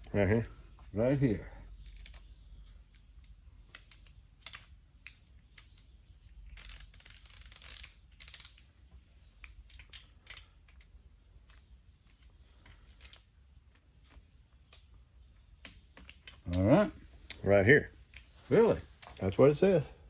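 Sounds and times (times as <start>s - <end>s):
ratchet wrench clicking: 6.5s - 8.7s.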